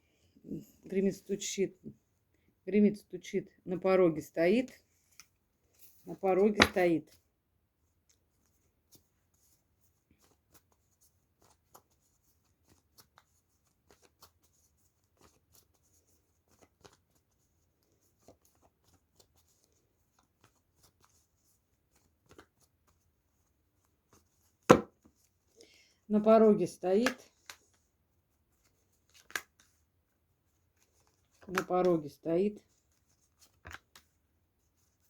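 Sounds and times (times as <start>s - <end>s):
cards being shuffled: 4.6s - 7.0s, 10.2s - 23.1s, 28.5s - 29.8s, 30.5s - 35.0s.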